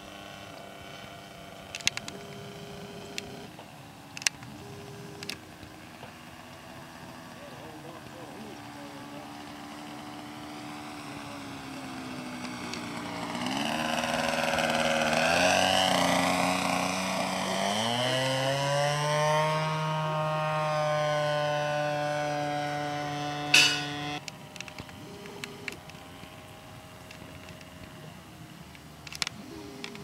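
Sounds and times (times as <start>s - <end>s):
model airplane engine buzzing: 0.0s - 30.0s.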